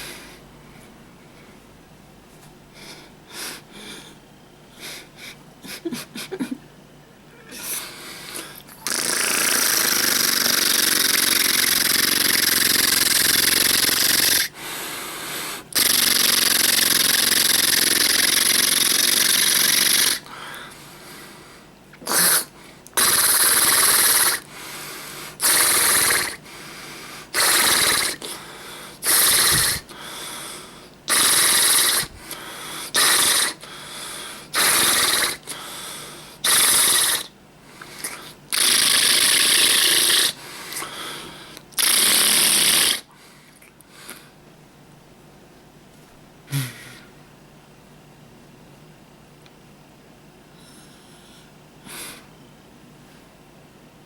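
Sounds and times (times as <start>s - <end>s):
person making fart sounds: 8.7s - 14.5s, 15.8s - 20.2s, 22.0s - 24.4s, 25.4s - 26.4s, 27.4s - 28.3s, 29.0s - 29.9s, 31.1s - 32.2s, 33.0s - 33.6s, 34.6s - 35.5s, 36.4s - 37.3s, 38.0s - 40.4s, 41.8s - 43.1s.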